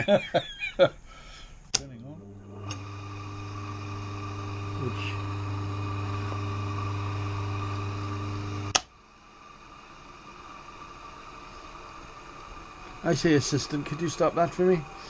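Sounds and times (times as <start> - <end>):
electric motor humming: 1.7 - 15.0
switch click: 8.7 - 8.9.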